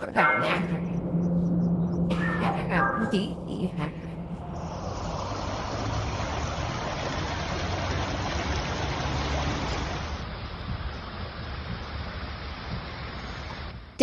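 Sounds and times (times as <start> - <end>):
rushing floodwater roar: 4.7 - 13.9.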